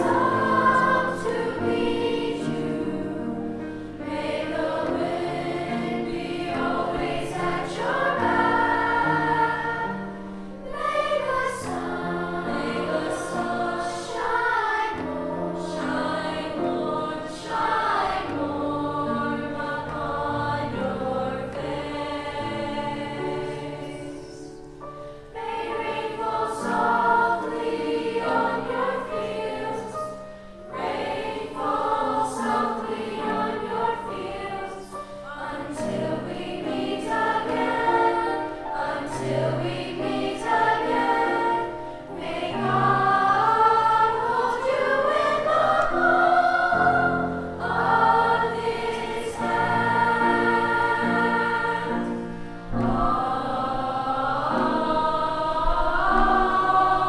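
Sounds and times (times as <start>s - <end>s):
children's choir singing: 0.0s - 57.0s.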